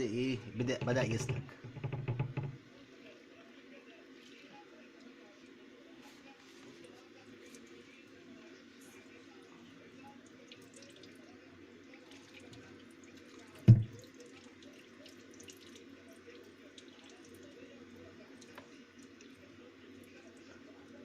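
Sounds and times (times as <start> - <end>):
water trickling and dripping: 10.2 - 20.5
low thump: 13.7 - 13.9.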